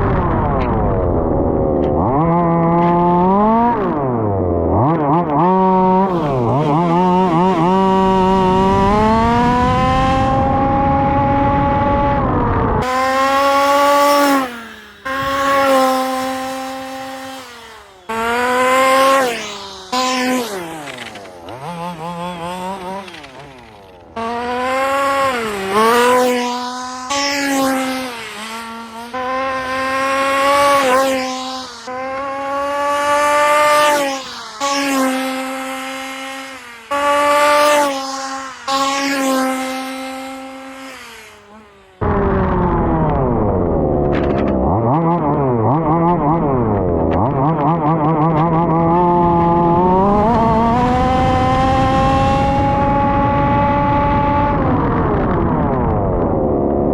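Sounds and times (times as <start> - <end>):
two-stroke engine revving high: 0.0 - 56.8.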